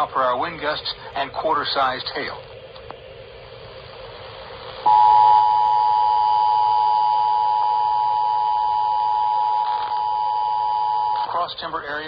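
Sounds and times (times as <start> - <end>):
two-tone alert signal: 4.9 - 11.2.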